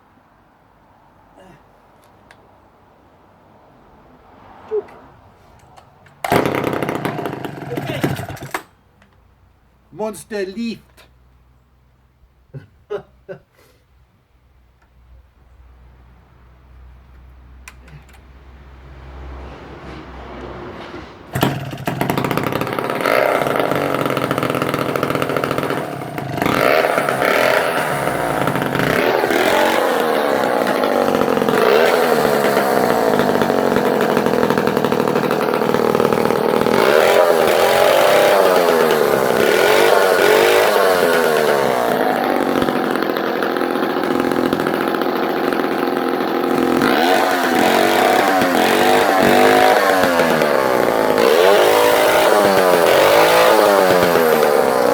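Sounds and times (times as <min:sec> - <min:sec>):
chainsaw revving: 0:06.1 - 0:08.8, 0:18.8 - 0:54.9.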